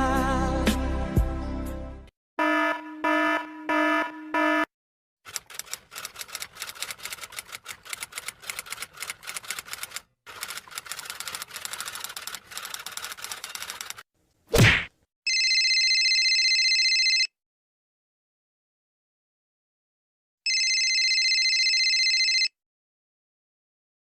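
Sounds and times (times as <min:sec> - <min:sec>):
rapid typing clicks: 0:05.3 - 0:14.0.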